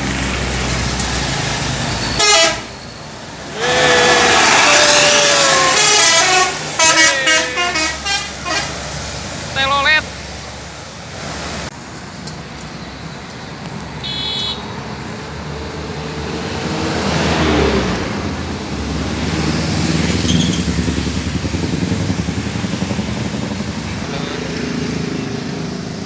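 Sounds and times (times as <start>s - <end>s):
road traffic passing: 0.0s - 26.0s
short high horn beep: 14.0s - 14.6s.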